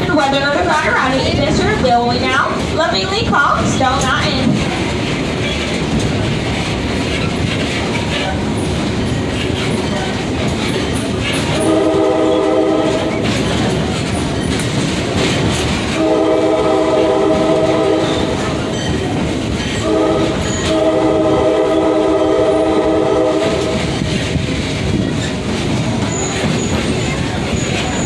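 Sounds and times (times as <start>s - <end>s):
train clickety-clack and rumble: 0.0s - 28.0s
train horn blasts: 11.5s - 13.4s, 15.9s - 18.8s, 19.8s - 24.0s.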